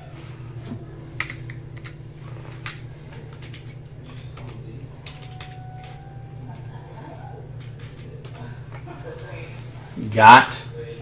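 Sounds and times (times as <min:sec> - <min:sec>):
steady low hum: 0:00.0 - 0:11.0
keyboard typing: 0:01.2 - 0:08.9.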